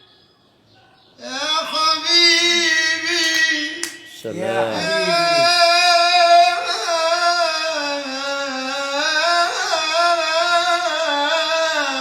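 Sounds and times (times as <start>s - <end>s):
person singing long wavering vowel: 4.2s - 7.0s.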